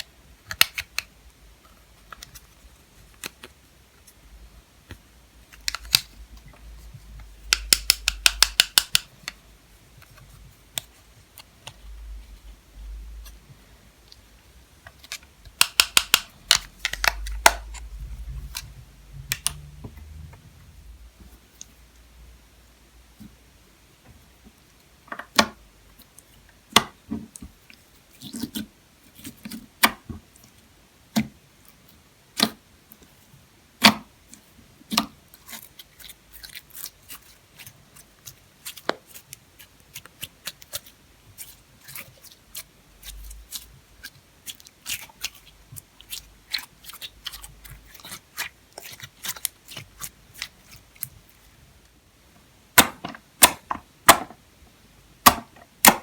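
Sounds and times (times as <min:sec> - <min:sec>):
slime clicking and popping: 0:07.4 - 0:09.1, 0:15.5 - 0:17.9.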